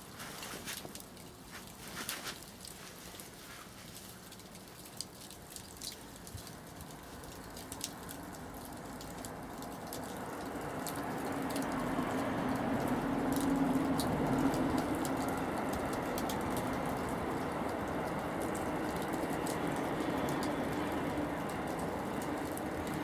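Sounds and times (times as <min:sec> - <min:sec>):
wood fire crackling and popping: 0:00.0 - 0:12.0.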